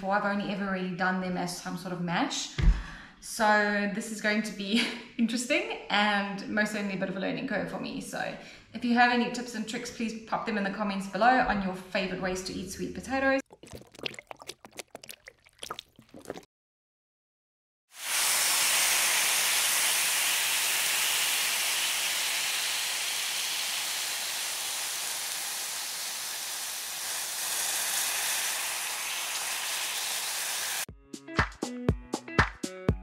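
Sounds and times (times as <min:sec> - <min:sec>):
chips sizzling in hot oil: 0:17.9 - 0:30.9
music with a beat: 0:30.9 - 0:33.0.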